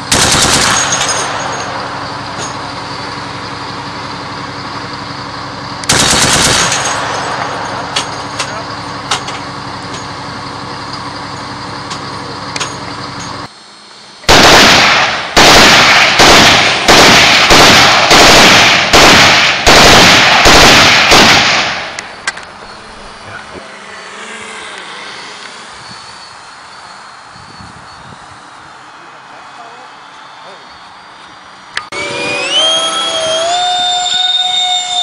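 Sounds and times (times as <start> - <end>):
machine-gun fire: 0.0 - 1.9, 5.8 - 8.4, 14.3 - 22.0
motor hum: 0.0 - 28.8, 30.1 - 35.0.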